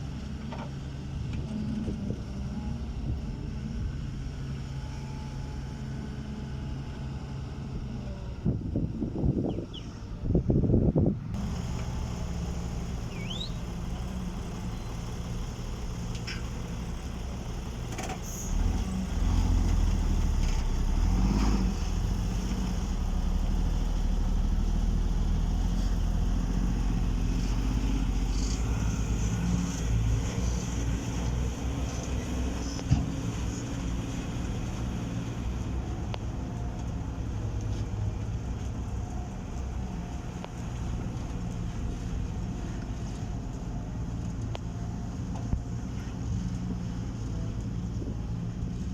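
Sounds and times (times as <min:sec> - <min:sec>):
heavy machinery diesel engines running: 0:11.1 - 0:48.9.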